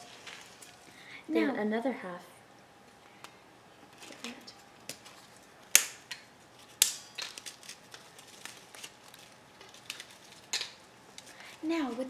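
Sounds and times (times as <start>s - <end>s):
crackers snapping and crumbling: 0.0s - 1.0s, 3.1s - 11.6s.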